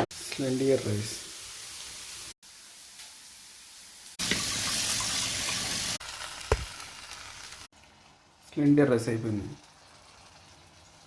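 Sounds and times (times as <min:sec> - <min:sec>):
water running from a tap: 0:04.2 - 0:07.6.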